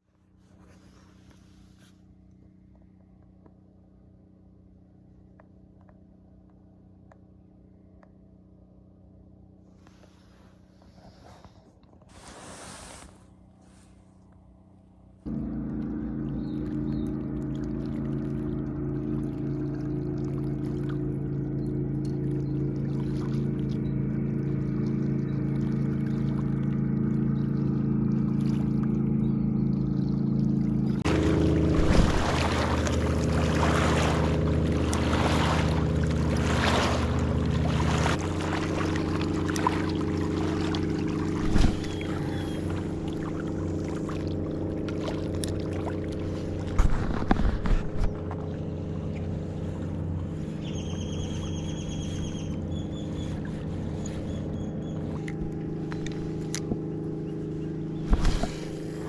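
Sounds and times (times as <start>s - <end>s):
motorboat engine running: 0.0s - 59.0s
hissing rush of water: 31.1s - 44.2s, 58.0s - 59.0s.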